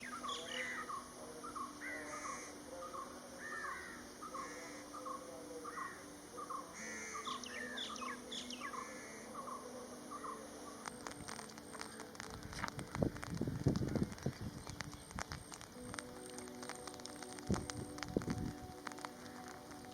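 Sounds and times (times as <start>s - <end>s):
birds calling: 0.0s - 19.9s
sharp ticks: 10.2s - 19.9s.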